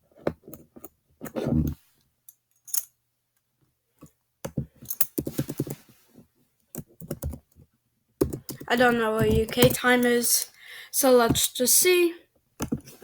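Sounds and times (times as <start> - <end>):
computer keyboard typing: 6.8 - 7.4, 8.2 - 10.2.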